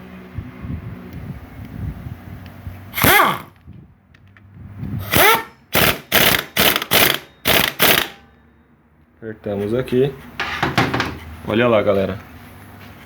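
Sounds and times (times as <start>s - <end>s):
impact wrench hissing bursts: 3.0s - 3.5s, 5.0s - 8.2s
impact wrench short quick blips: 3.0s - 3.5s, 5.0s - 8.3s.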